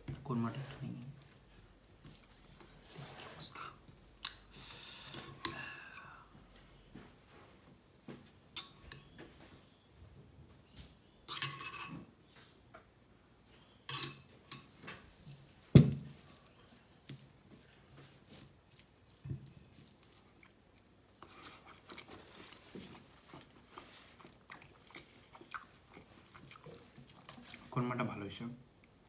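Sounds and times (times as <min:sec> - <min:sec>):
close-miked chewing and eating: 0:01.0 - 0:07.0, 0:14.3 - 0:29.0.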